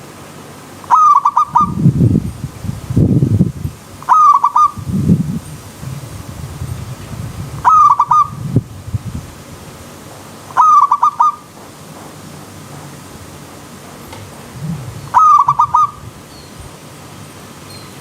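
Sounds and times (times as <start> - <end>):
dove cooing: 0.9 - 1.9, 4.1 - 4.8, 7.6 - 8.4, 10.6 - 11.4, 14.4 - 16.0.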